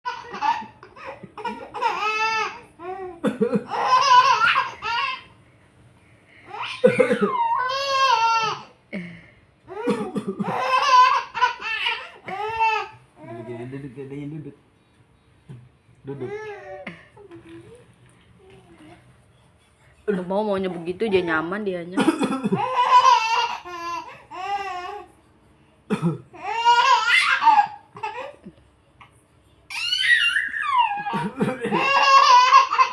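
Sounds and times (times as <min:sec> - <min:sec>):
baby laughing: 0:00.1 - 0:05.2, 0:06.5 - 0:08.7, 0:09.7 - 0:13.0, 0:22.2 - 0:25.0, 0:26.4 - 0:28.5, 0:29.7 - 0:32.9
adult coughing: 0:03.2 - 0:03.7, 0:06.8 - 0:07.4, 0:09.8 - 0:10.6, 0:22.0 - 0:22.6, 0:25.9 - 0:26.3, 0:31.1 - 0:31.9.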